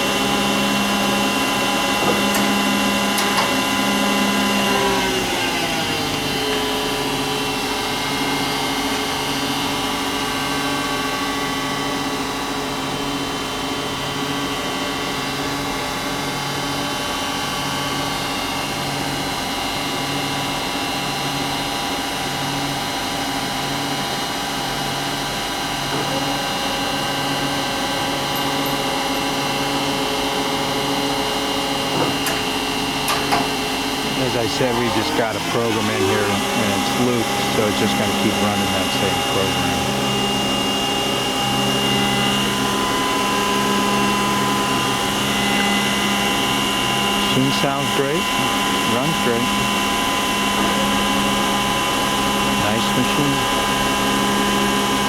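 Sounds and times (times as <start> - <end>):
lathe spindle whine: 0.0 - 55.0
low machine throb: 26.3 - 55.0.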